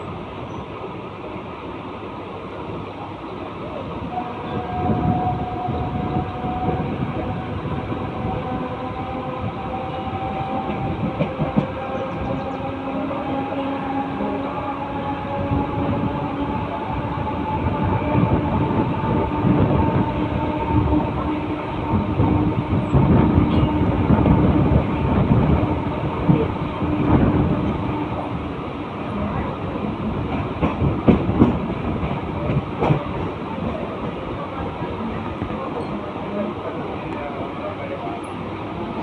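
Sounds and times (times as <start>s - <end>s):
train rumbling: 0.0s - 39.0s.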